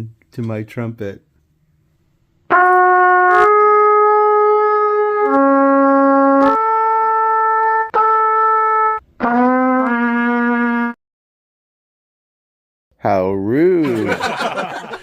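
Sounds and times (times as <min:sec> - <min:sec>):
trumpet playing long notes: 0:02.5 - 0:11.0.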